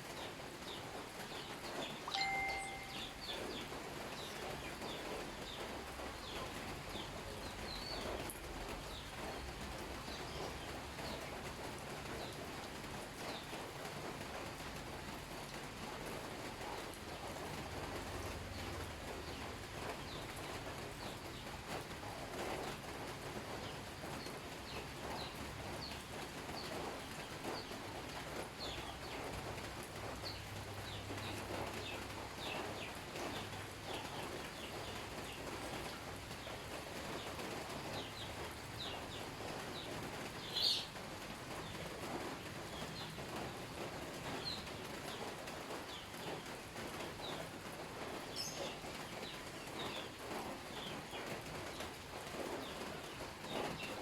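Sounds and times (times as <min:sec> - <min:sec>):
small birds chirping: 0:23.6 - 0:29.4, 0:30.2 - 0:43.6, 0:44.2 - 0:45.3, 0:48.2 - 0:54.0.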